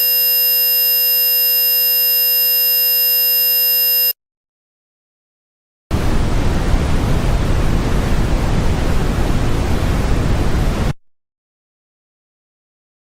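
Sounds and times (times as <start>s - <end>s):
rushing hiss with low rumble: 6.0s - 10.9s.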